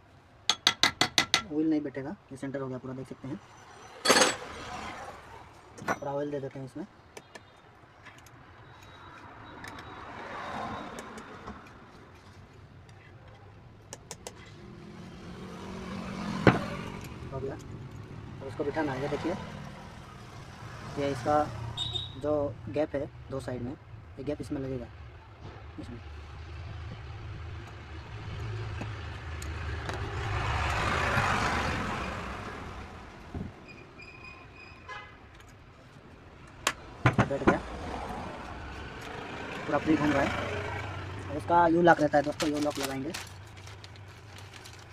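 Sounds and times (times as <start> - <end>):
passing vehicle hum: 14.4 - 21.9, 25.3 - 34.5, 36.0 - 44.9
faint car horn: 34.6 - 35.2
vehicle engine rumble: 35.4 - 44.9.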